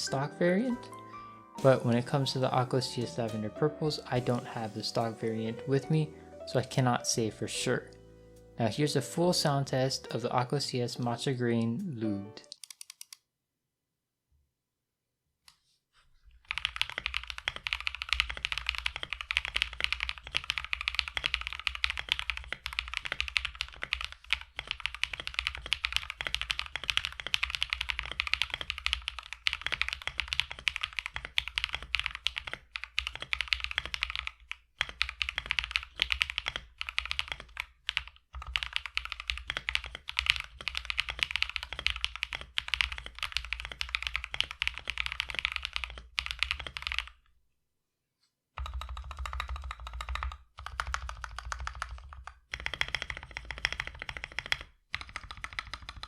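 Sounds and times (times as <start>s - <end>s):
mechanical keyboard typing: 12.4s - 13.2s, 16.5s - 47.2s, 48.6s - 56.0s.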